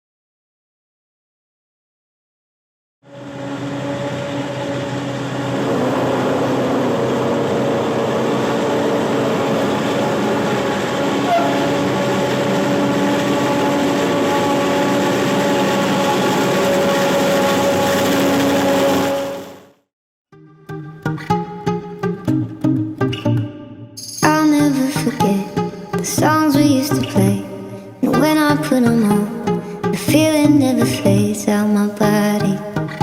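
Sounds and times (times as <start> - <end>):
diesel farm machinery running: 3.1 - 19.7.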